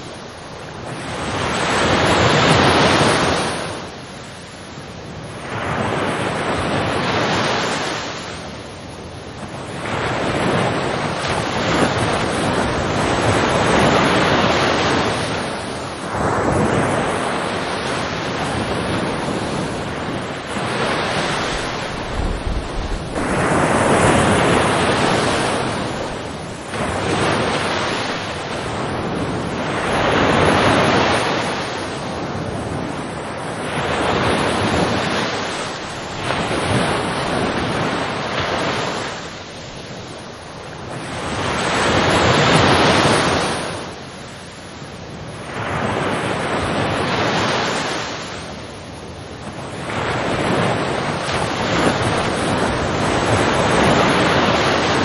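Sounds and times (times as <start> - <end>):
ocean waves breaking: 0.0 - 55.0.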